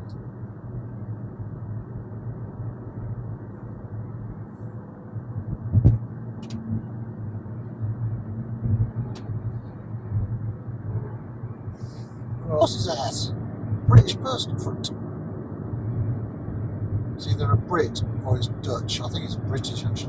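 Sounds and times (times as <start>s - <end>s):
engine and road drone: 0.0s - 20.0s.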